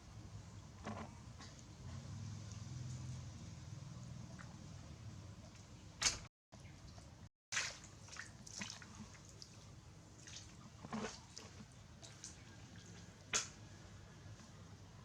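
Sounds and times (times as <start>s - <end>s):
water splashing in a tub: 5.6s - 13.8s.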